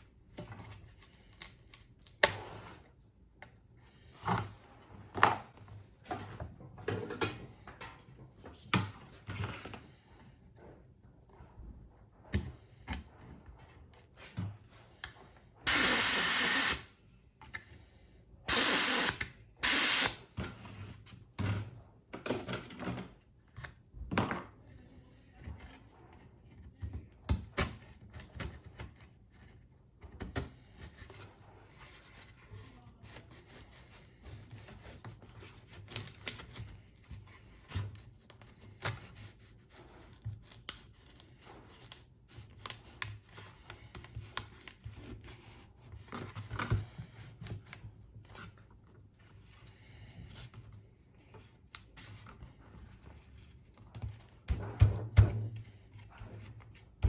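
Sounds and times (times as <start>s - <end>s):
short loud hissing bursts: 15.7s - 16.9s, 18.5s - 20.2s.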